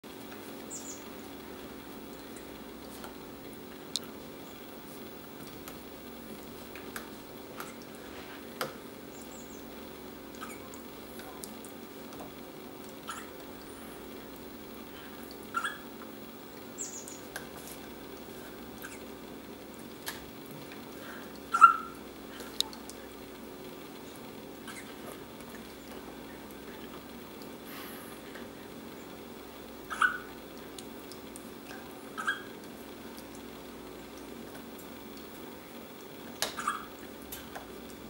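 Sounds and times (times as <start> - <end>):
dog hiccupping: 10.3 - 10.7, 13.0 - 13.4, 15.5 - 15.9, 18.8 - 19.1, 21.5 - 22.0, 24.6 - 25.0, 29.8 - 30.3, 32.2 - 32.5, 36.4 - 37.0.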